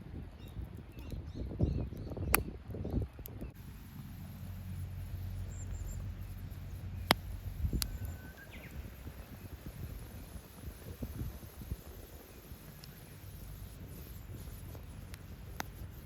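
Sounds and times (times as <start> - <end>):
campfire crackling and popping: 0.6 - 16.0
low steady rumble: 2.9 - 16.0.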